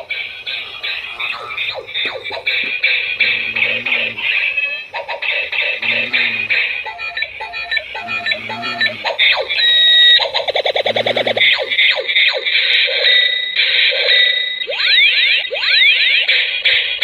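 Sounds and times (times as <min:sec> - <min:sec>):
fast pulsing buzz: 0:00.0 - 0:12.0
electronic toy beeps: 0:06.0 - 0:16.3.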